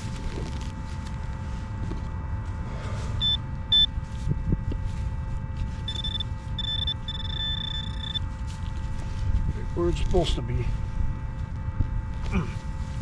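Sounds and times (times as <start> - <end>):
metal detector beeping: 3.2 - 4.0, 5.8 - 8.3.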